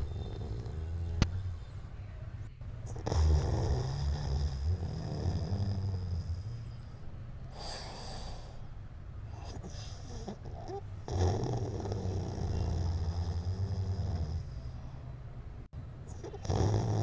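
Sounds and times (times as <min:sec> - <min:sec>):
puppy snoring: 0:00.0 - 0:01.4, 0:02.8 - 0:06.9, 0:09.3 - 0:14.8, 0:16.1 - 0:17.0.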